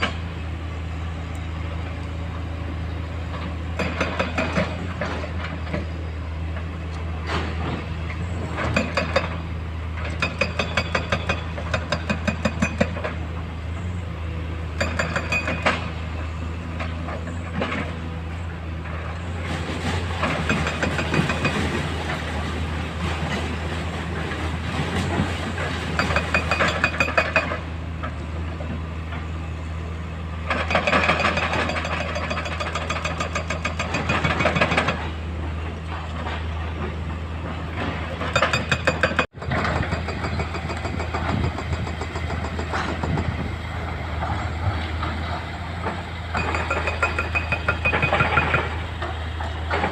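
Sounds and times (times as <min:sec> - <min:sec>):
excavator diesel engine running: 0:00.0 - 0:49.9
hydraulic breaker hammering rock: 0:03.4 - 0:05.9, 0:07.4 - 0:13.3, 0:14.7 - 0:16.2, 0:19.9 - 0:22.2, 0:24.8 - 0:27.7, 0:30.4 - 0:36.9, 0:37.7 - 0:43.5, 0:45.0 - 0:49.9.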